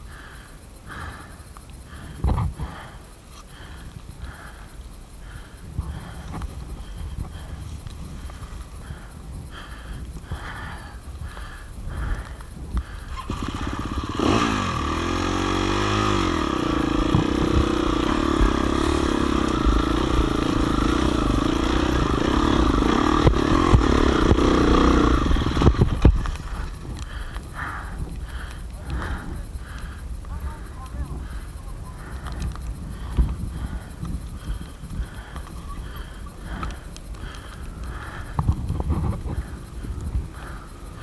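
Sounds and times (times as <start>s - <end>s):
motorcycle engine revving: 12.8s - 30.0s.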